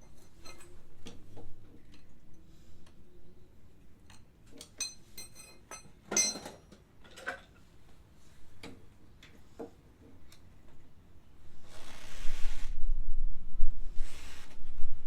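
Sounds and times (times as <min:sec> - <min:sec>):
metal tools clinking: 0:04.8 - 0:07.4.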